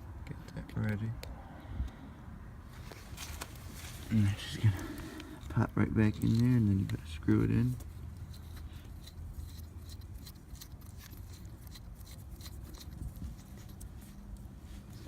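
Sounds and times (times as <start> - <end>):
valve tool clicks and scratches: 7.8 - 13.9.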